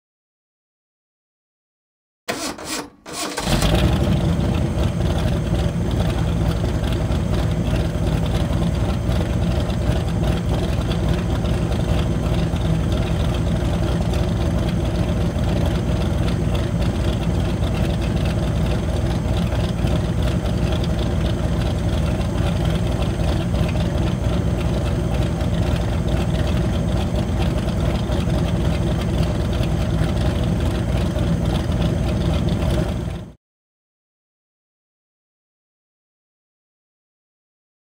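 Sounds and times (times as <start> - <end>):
sports car engine starting and idling: 2.3 - 33.4.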